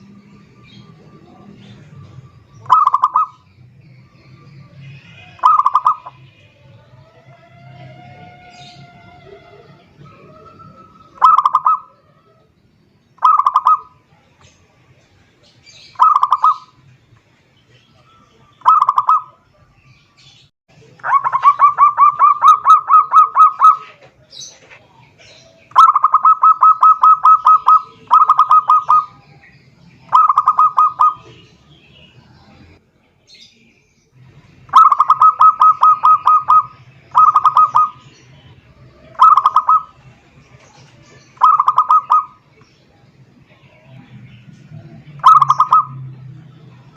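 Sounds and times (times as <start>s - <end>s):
dove cooing: 0.6s - 3.6s, 5.0s - 12.5s, 13.2s - 14.0s, 15.9s - 16.8s, 18.1s - 19.4s, 21.0s - 29.3s, 30.0s - 31.5s, 34.7s - 38.2s, 38.8s - 42.4s, 45.2s - 46.0s.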